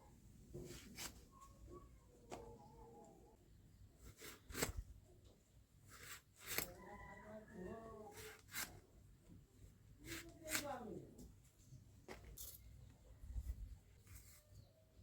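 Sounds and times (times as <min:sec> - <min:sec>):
faint voice: 0:06.7 - 0:08.4.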